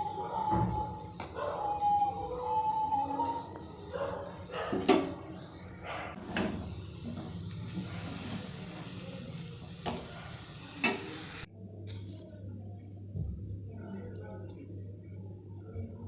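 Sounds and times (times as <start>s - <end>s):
banana pieces sizzling in a frying pan: 2.7s - 11.5s.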